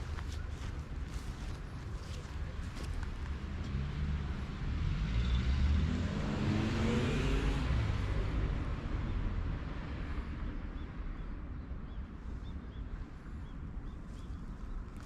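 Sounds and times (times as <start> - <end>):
vehicle engine accelerating past: 3.5 - 9.0.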